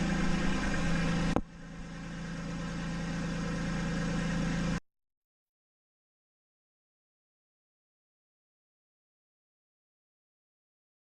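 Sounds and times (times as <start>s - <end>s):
machine humming: 0.0s - 4.8s.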